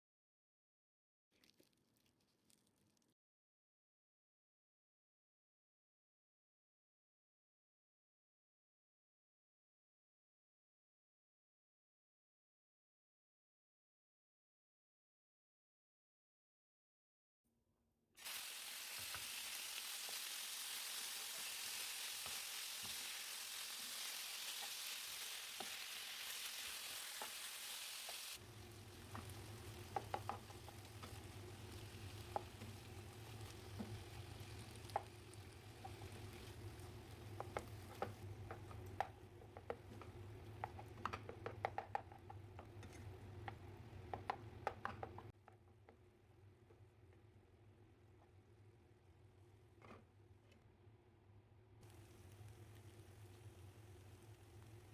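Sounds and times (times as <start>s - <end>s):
food sizzling in a pan: 18.2s - 45.3s, 51.8s - 54.9s.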